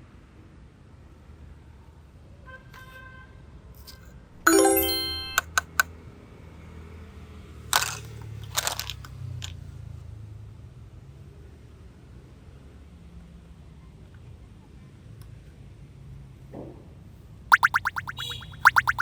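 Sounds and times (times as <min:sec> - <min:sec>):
bright chime: 0:04.5 - 0:05.4.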